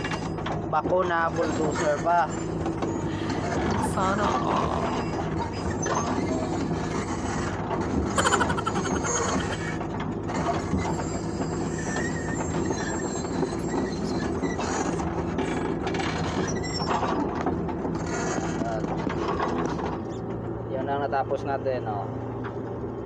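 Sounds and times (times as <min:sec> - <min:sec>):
metallic squeals and clanks: 0:00.0 - 0:20.3
bulldozer diesel engine running: 0:00.0 - 0:23.0
sharp metallic screech: 0:01.4 - 0:07.5, 0:10.6 - 0:15.7.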